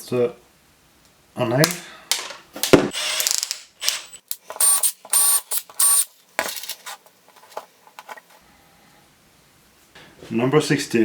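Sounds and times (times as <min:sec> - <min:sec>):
drill whirring: 0:02.9 - 0:03.2, 0:03.8 - 0:06.1.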